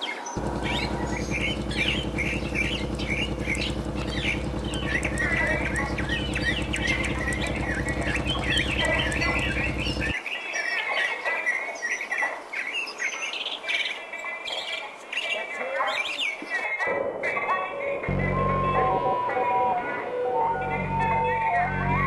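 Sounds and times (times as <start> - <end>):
small birds chirping: 0.0 - 18.6
low buzzing hum: 0.4 - 10.2, 18.1 - 22.0.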